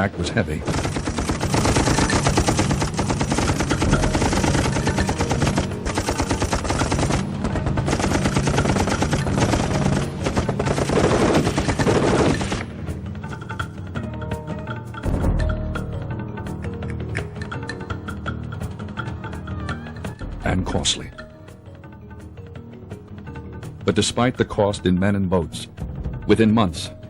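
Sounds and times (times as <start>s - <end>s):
music: 0.0s - 27.0s
machine-gun fire: 0.6s - 12.8s.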